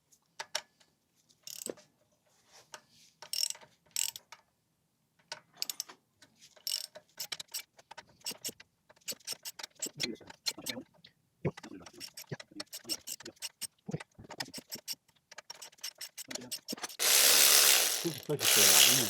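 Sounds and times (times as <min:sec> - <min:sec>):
socket ratchet clicking: 0:14.5 - 0:19.0.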